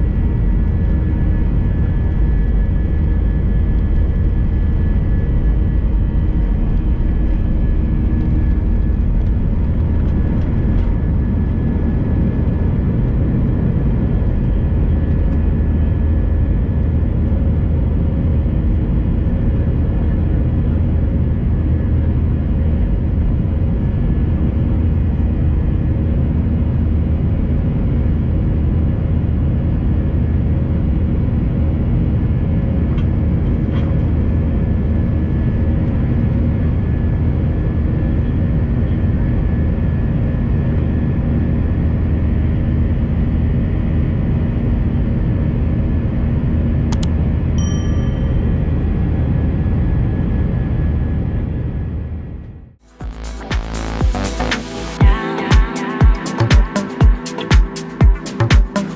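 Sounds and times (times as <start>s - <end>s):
jet engine cabin rumble: 0.0s - 47.5s
steady tones: 52.8s - 58.9s.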